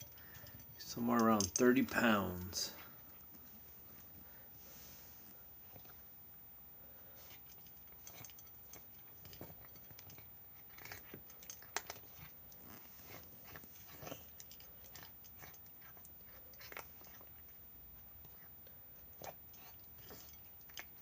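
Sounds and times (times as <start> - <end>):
cat chewing clicks: 7.4 - 17.6.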